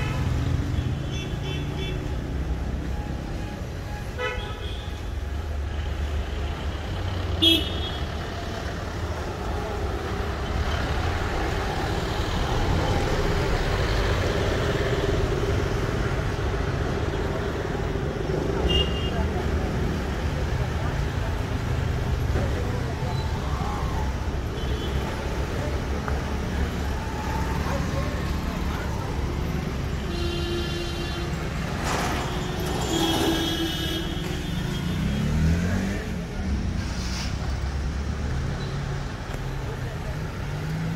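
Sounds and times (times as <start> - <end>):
road traffic rumble: 0.0 - 40.9
car horn: 4.2 - 5.0, 7.4 - 8.1, 30.0 - 31.4, 32.3 - 35.4
vehicle engine revving away: 34.9 - 36.8.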